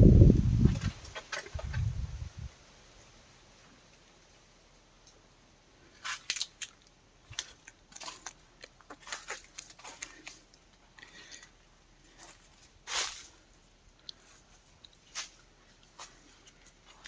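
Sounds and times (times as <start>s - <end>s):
footsteps crunching on dry leaves: 6.0s - 10.5s, 12.0s - 13.5s, 14.2s - 17.0s.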